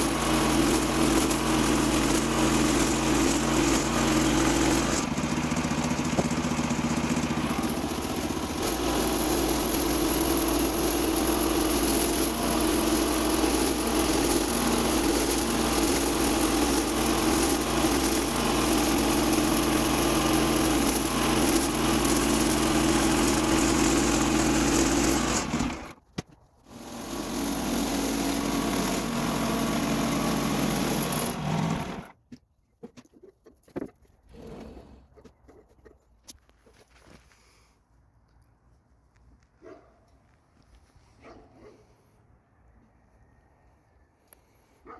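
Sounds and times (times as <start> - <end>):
sawmill engine droning: 0.0 - 26.0, 26.7 - 32.2.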